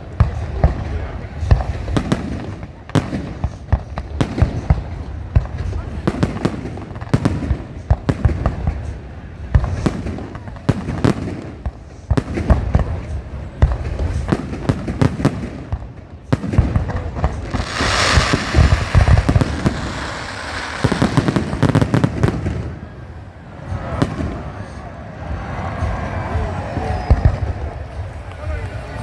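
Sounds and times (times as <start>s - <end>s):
fireworks bangs: 9.5s - 23.2s
fireworks hissing crackle: 17.3s - 22.6s.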